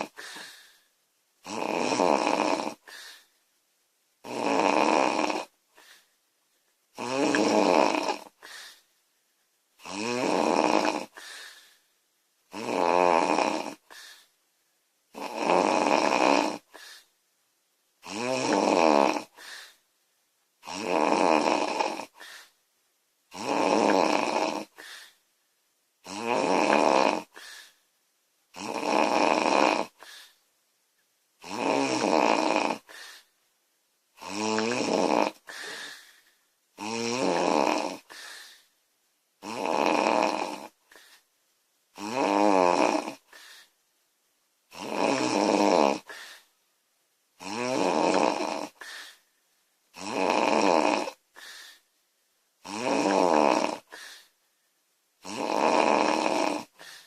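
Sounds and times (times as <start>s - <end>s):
woman snoring loudly: 0.0s - 0.5s, 1.4s - 3.2s, 4.2s - 5.6s, 7.0s - 8.6s, 9.8s - 11.5s, 12.5s - 14.2s, 15.1s - 17.0s, 18.0s - 19.8s, 20.6s - 22.5s, 23.3s - 25.1s, 26.0s - 27.6s, 28.5s - 30.3s, 31.4s - 33.2s, 34.2s - 36.1s, 36.8s - 38.4s, 39.4s - 40.8s, 42.0s - 43.4s, 44.7s - 46.4s, 47.4s - 49.2s, 49.9s - 51.6s, 52.6s - 54.3s, 55.2s - 57.0s.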